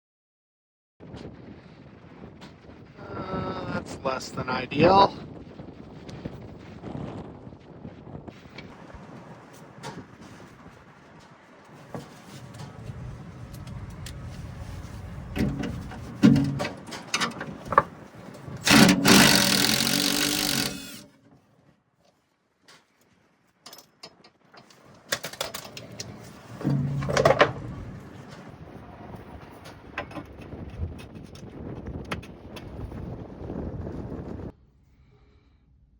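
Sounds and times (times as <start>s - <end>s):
power tool motor running: 18.6s - 21.1s.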